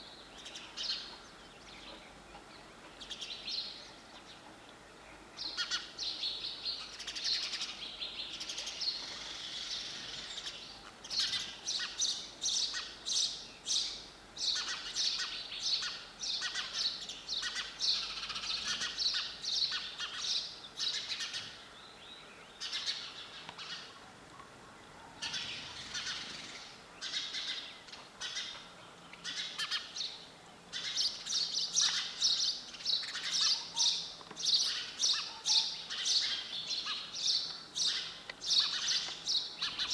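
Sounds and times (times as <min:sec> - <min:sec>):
sparrows chirping: 0:05.4 - 0:24.0, 0:25.0 - 0:39.9.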